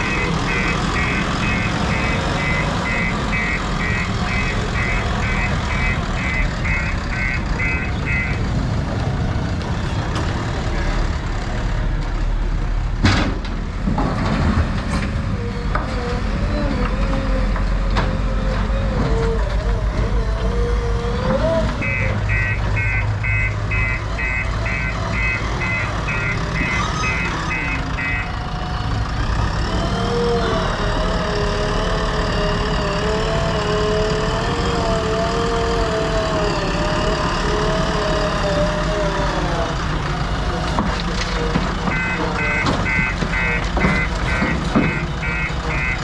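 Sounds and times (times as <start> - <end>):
reversing alarm beeping: 0.0 - 8.4, 21.8 - 28.6, 41.8 - 46.0
diesel engine running: 0.0 - 46.0.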